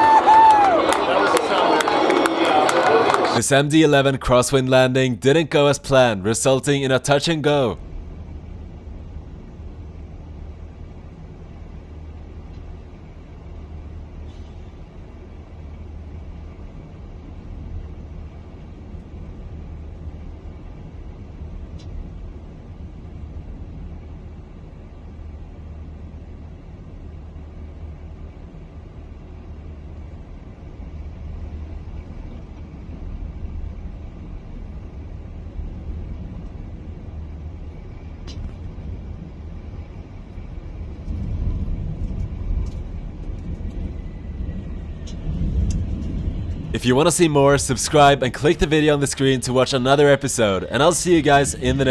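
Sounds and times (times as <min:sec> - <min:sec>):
airliner engines rumbling: 0:00.7 - 0:17.2, 0:42.0 - 0:51.9
jet engines rumbling: 0:43.9 - 0:51.9.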